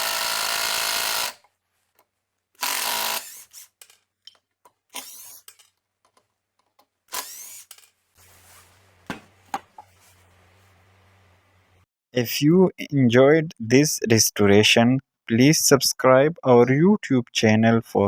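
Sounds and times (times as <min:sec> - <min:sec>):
electric screwdriver motor whine: 0:02.6 - 0:03.8, 0:05.0 - 0:05.5, 0:07.1 - 0:07.9.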